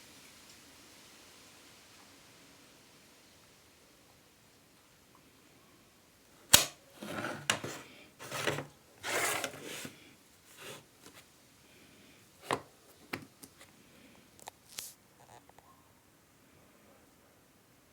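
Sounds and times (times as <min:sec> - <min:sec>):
packaging snapping: 0:06.5 - 0:09.9
packaging scraping and rustling: 0:07.0 - 0:11.3, 0:12.4 - 0:13.7.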